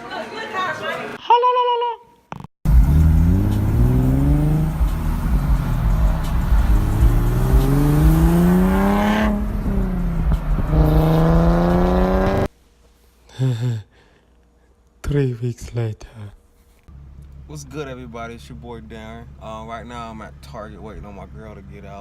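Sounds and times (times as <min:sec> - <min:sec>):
car engine accelerating: 0:02.7 - 0:12.5.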